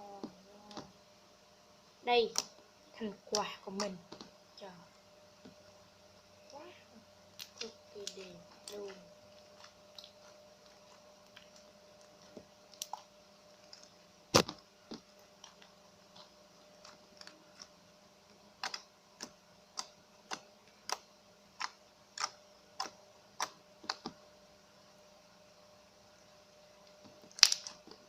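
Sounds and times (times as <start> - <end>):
slime clicking and popping: 18.6 - 24.2, 27.2 - 28.0.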